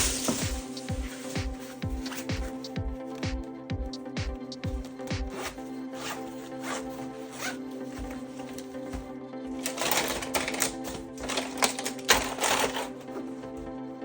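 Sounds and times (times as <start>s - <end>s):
background music with held tones: 0.0s - 14.0s
toy parts clicking and rustling: 9.6s - 13.2s.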